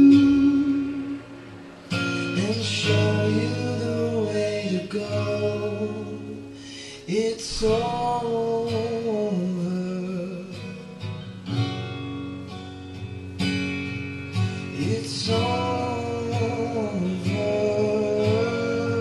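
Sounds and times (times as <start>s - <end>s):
person singing long notes: 0.0s - 1.6s
strummed acoustic guitar: 0.0s - 19.0s.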